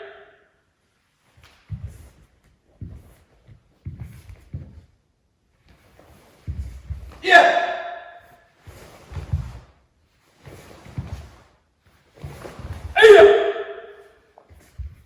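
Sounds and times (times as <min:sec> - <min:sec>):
dull thuds of footwork on floor: 0:01.4 - 0:05.0, 0:05.6 - 0:07.5, 0:08.6 - 0:09.8, 0:10.4 - 0:13.2, 0:14.4 - 0:15.0
person shouting: 0:07.2 - 0:07.9, 0:13.0 - 0:13.7.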